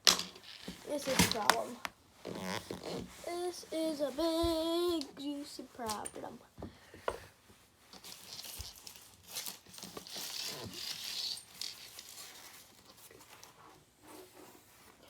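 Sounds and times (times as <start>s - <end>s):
hands rummaging among parts: 0.1s - 1.8s, 7.5s - 15.0s.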